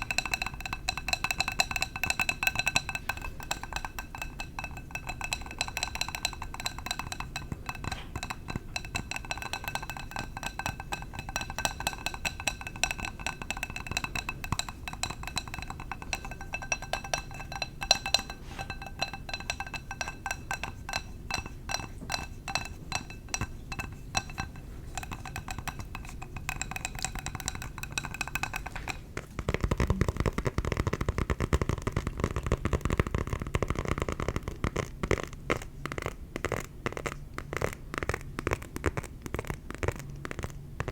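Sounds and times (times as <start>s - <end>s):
tapping on ringing glass jar: 0.0s - 29.2s
dull tapping on leather: 27.0s - 40.9s.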